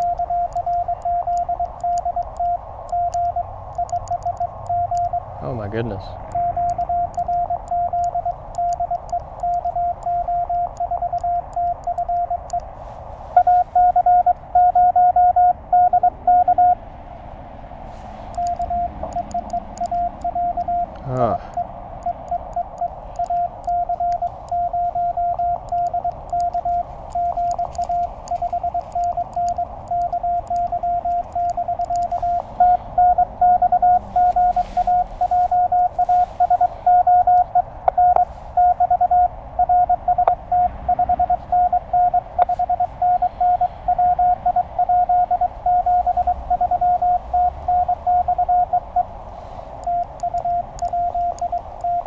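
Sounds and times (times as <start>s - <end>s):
faint clicks: 0.0s - 5.2s, 6.2s - 15.3s, 18.0s - 52.0s
morse code tone: 0.0s - 16.8s, 17.9s - 52.0s
radio band hiss: 5.2s - 7.3s, 17.9s - 38.8s, 49.1s - 51.8s.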